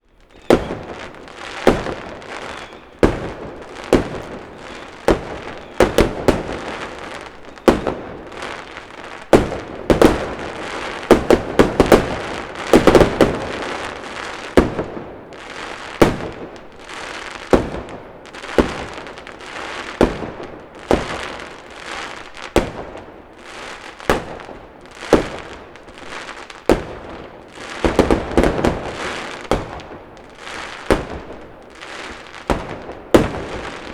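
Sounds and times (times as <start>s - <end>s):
fireworks bangs: 0.0s - 33.9s
fireworks crackling: 0.0s - 33.9s.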